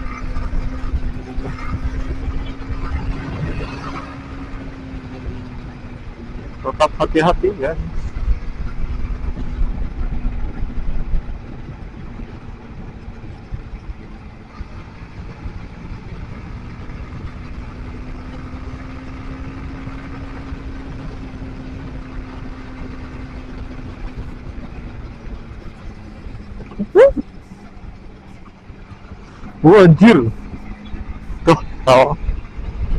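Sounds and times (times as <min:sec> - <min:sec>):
wind noise: 0:00.0 - 0:06.6
motorcycle engine hum: 0:00.0 - 0:32.9
road rumble: 0:00.0 - 0:32.9.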